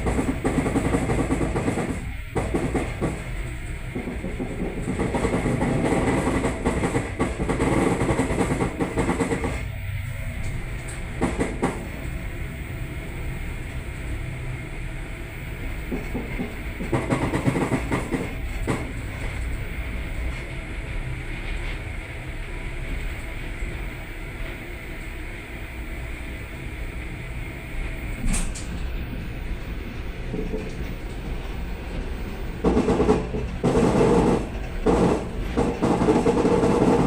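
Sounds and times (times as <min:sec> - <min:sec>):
train rumble: 0:00.0 - 0:37.0
wheels clattering over rail joints: 0:30.1 - 0:37.0.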